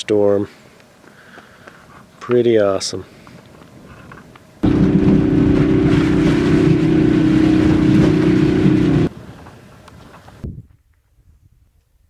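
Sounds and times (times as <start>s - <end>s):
vehicle engine running: 4.6s - 9.1s
rushing wind noise: 4.6s - 11.5s.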